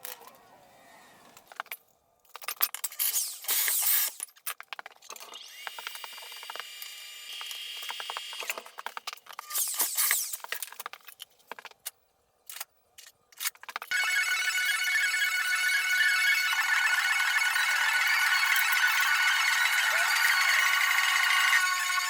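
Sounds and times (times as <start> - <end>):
high ringing tone: 13.9 - 22.0.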